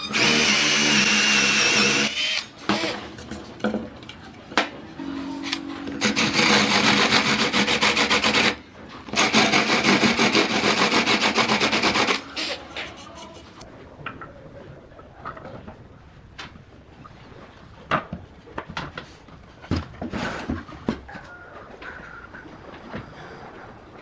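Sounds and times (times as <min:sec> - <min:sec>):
tool rasping on spinning wood: 0:06.0 - 0:13.6.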